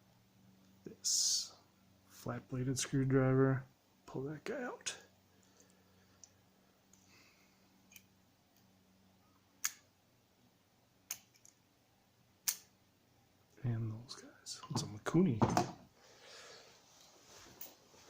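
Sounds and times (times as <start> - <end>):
faint steady hum: 0.0 - 18.0.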